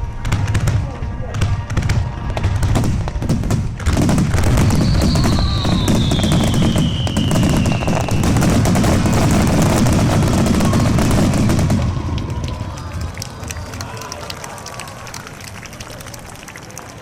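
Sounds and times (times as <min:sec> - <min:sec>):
fireworks bursts and crackling: 0:00.0 - 0:17.0
falling firework whistle: 0:04.0 - 0:12.8.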